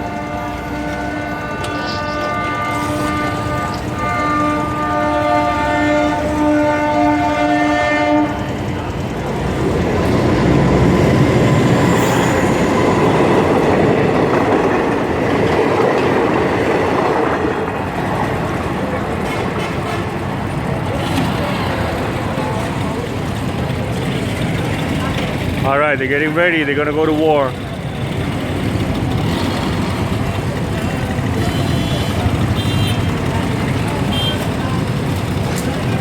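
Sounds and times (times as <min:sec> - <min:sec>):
train horn: 0:00.0 - 0:08.7, 0:19.3 - 0:20.2, 0:31.3 - 0:34.7
train passing rush: 0:00.0 - 0:36.0.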